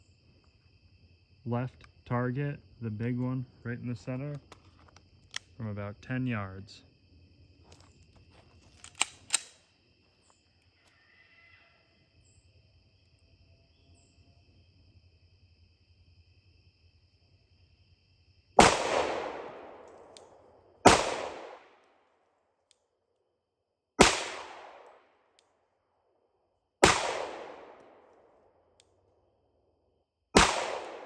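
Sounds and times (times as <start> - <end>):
pistol shots with echo: 18.6 - 21.8, 24.0 - 25.1, 26.8 - 28.2, 30.4 - 31.0.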